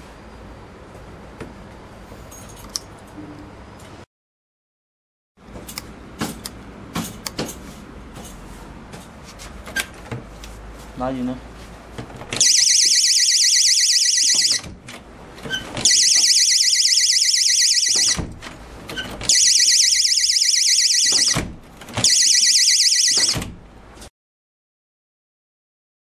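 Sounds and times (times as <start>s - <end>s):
alarm warbling siren: 12.4s - 14.7s, 15.8s - 18.2s, 19.3s - 21.4s, 22.0s - 23.4s.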